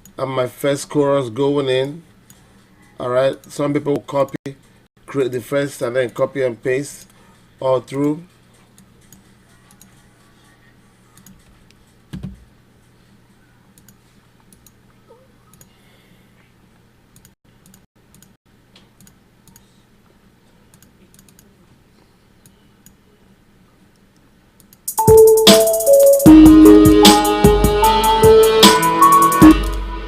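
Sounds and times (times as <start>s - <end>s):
keyboard and mouse clicks: 11.2s - 11.5s, 13.8s - 14.8s, 15.5s - 15.8s, 17.1s - 19.7s, 20.7s - 21.5s
beat playback: 24.9s - 30.0s.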